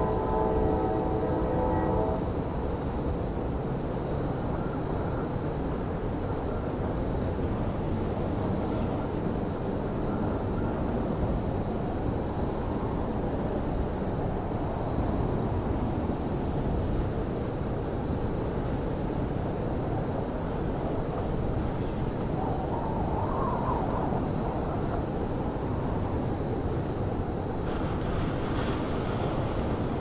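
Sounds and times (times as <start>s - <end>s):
faint high whine: 0.0s - 4.8s
wind-like hiss: 0.0s - 30.0s.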